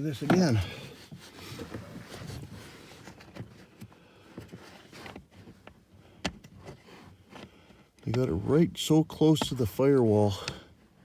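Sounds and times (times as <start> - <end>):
rustling handling noises: 0.0 - 11.0.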